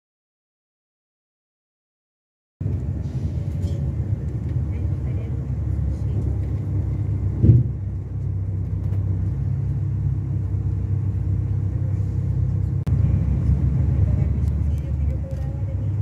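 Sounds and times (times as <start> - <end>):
bus diesel engine rumbling: 2.6 - 16.0
loud thump: 7.4 - 7.8.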